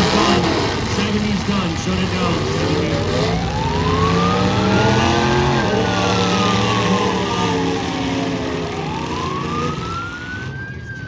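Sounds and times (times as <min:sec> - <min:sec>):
car engines running: 0:00.0 - 0:11.0
siren wailing: 0:02.2 - 0:11.0.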